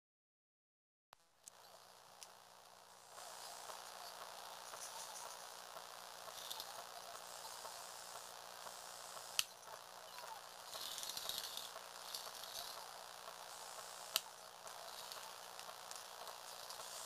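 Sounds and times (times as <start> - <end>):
small electric motor whirring: 1.5 - 17.0
plastic gears whirring: 3.2 - 17.0
sharp clicks: 9.1 - 9.9, 10.7 - 17.0.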